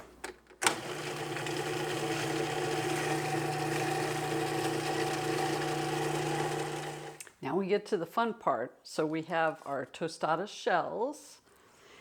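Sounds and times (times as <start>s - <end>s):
blender motor running: 0.7s - 7.2s.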